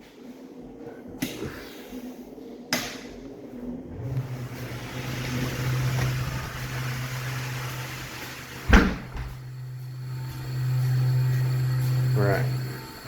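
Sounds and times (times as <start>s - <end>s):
pump motor humming: 3.9s - 13.0s.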